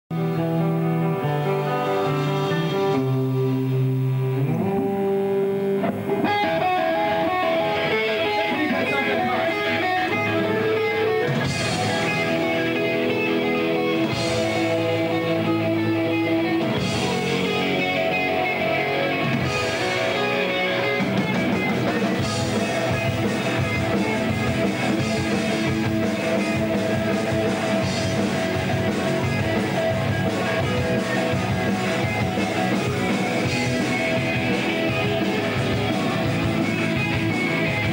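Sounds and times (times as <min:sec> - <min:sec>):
rock band playing live: 0:00.1 - 0:37.9.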